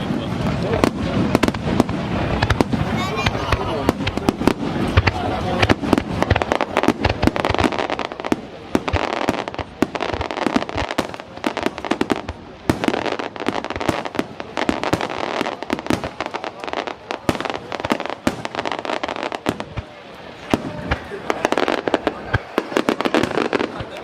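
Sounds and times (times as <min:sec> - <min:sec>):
fireworks bangs and pops: 0:00.0 - 0:24.0.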